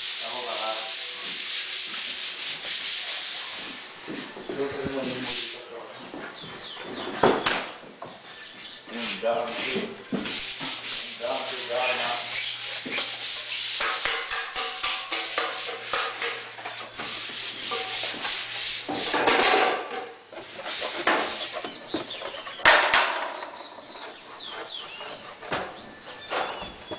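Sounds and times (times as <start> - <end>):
rough rubbing strokes: 0.0 - 5.7, 8.9 - 26.0.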